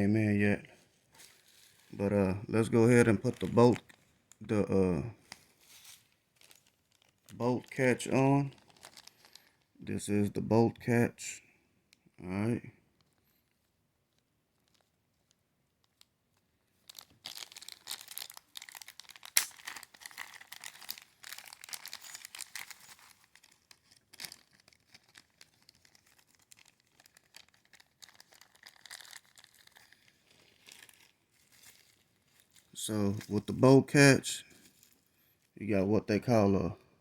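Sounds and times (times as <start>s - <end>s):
plastic packaging crinkling and tearing: 1.1s - 4.6s, 5.2s - 9.7s, 13.0s - 33.7s.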